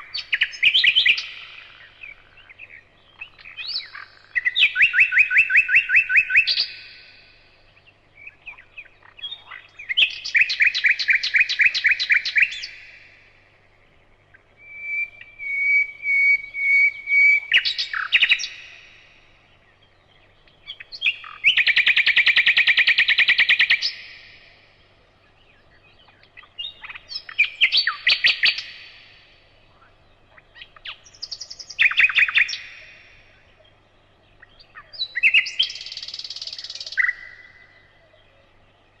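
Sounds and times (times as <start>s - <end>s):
songbird trilling: 0.0s - 39.0s.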